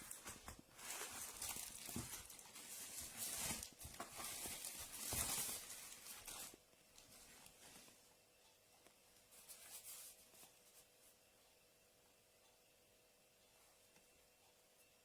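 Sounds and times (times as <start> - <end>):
faint rustling and handling: 0.0 - 11.6.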